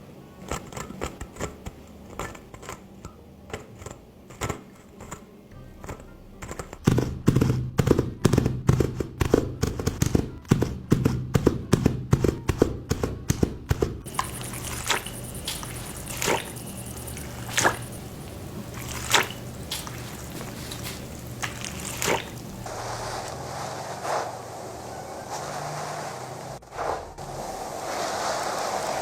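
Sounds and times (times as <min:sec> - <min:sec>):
low steady hum: 0:14.1 - 0:23.4
steady hiss: 0:14.1 - 0:29.0.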